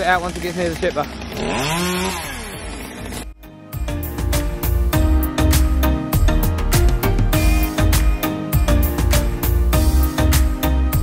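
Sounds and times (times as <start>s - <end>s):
background music with beat: 3.4s - 11.0s.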